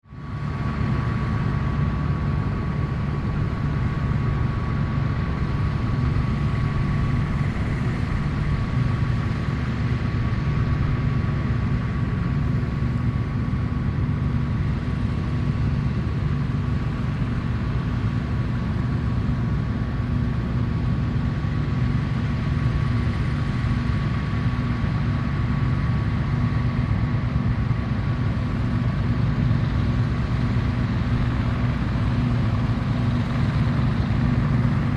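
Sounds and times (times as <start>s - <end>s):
combine harvester engine drone: 0.0s - 34.9s.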